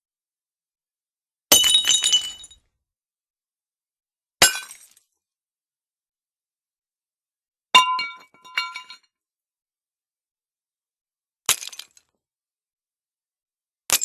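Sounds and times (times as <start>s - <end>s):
pottery smashing: 1.5s - 2.6s, 4.4s - 5.0s, 7.8s - 9.0s
shards clinking: 7.8s - 9.0s.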